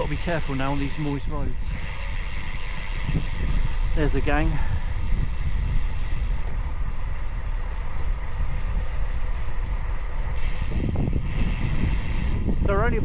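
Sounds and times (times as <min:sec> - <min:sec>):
wind buffeting microphone: 0:00.0 - 0:13.0.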